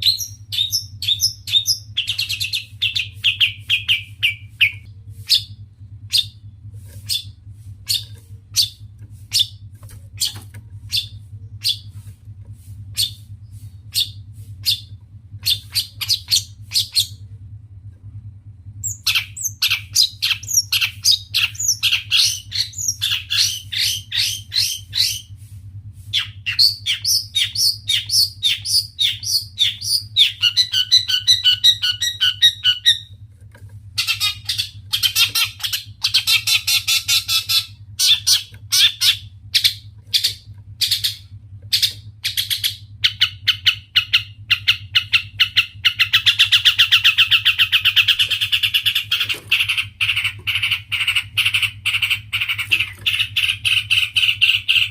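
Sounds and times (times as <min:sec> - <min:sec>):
bird chattering song: 0:00.0 - 0:12.0, 0:12.9 - 0:17.2, 0:18.8 - 0:25.4, 0:26.1 - 0:33.1, 0:34.0 - 0:54.9
fast buzzing rattle: 0:00.0 - 0:17.8, 0:18.6 - 0:54.9.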